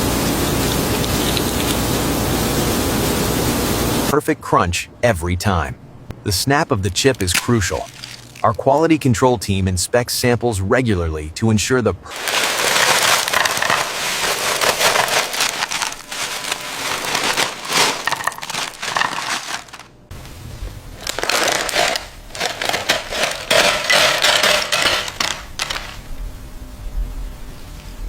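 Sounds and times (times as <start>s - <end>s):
potato chips crunching: 0.3s - 1.9s, 7.1s - 8.6s, 12.1s - 19.9s, 21.0s - 26.0s.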